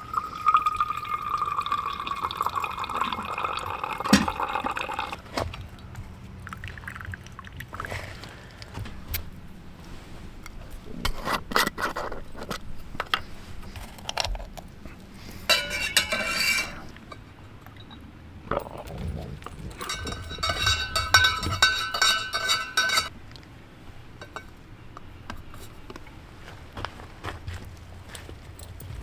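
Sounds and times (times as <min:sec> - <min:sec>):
metal dishes knocking and scraping: 0:15.4 - 0:18.0, 0:18.6 - 0:23.1, 0:24.2 - 0:24.6
rapid ringing clinks: 0:15.5 - 0:23.1.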